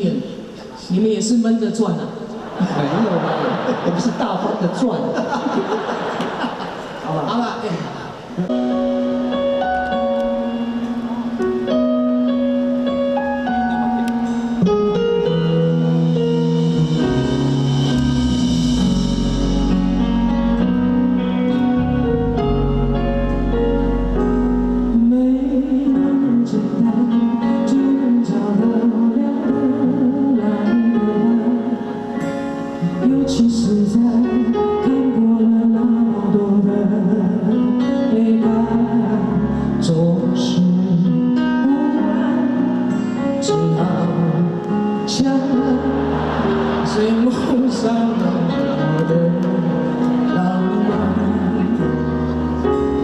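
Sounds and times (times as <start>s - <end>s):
live pop music with guitar: 8.2s - 53.0s
person singing: 8.4s - 9.3s, 18.7s - 53.0s.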